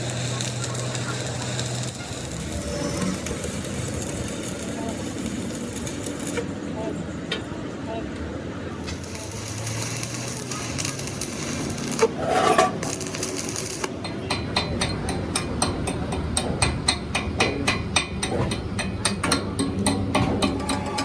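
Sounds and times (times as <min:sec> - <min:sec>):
metalwork hissing: 0:00.0 - 0:06.5, 0:08.8 - 0:14.0
metal clatter: 0:10.9 - 0:13.9
rapid sharp knocks on metal: 0:13.9 - 0:21.0.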